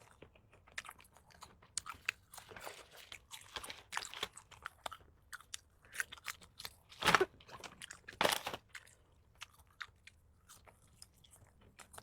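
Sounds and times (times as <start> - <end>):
crunching and chewing snack: 0.0 - 12.0.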